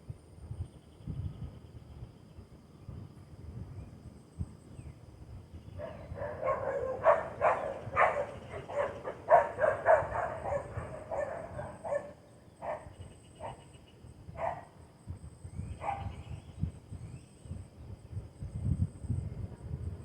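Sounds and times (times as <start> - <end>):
bird harsh calls: 5.8 - 13.9.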